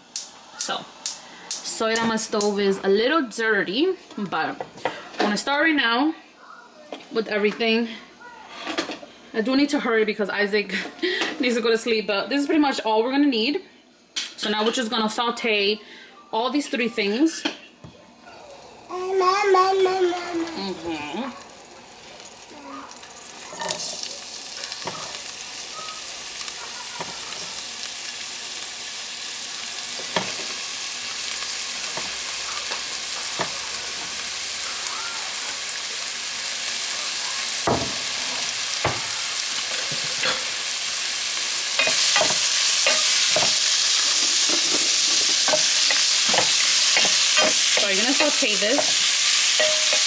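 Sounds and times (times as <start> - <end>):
vegetables sizzling in oil: 0.0 - 3.4, 18.8 - 50.0
spoon scraping a pot: 41.8 - 50.0.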